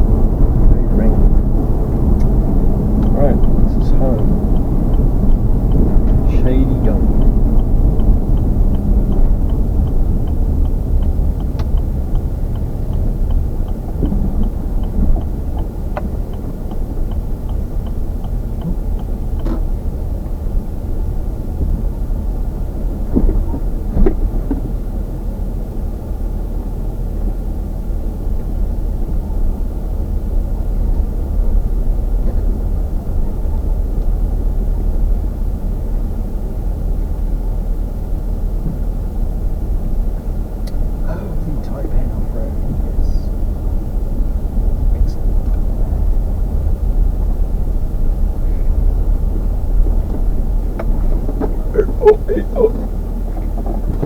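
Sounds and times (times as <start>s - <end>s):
faint regular ticking: 0.0s - 25.8s
vehicle rumble on road: 0.0s - 54.0s.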